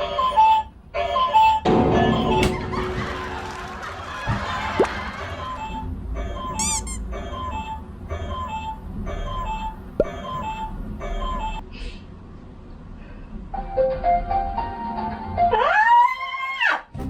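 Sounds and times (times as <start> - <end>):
alarm clock beeping: 4.4 - 11.6.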